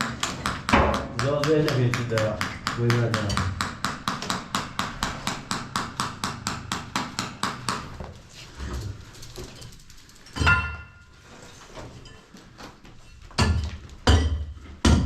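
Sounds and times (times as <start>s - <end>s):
rapid hammer blows: 0.0s - 8.0s.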